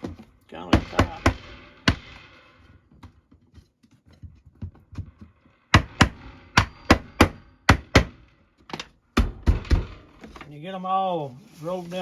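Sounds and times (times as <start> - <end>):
hammer tapping wooden bars: 4.6 - 9.8.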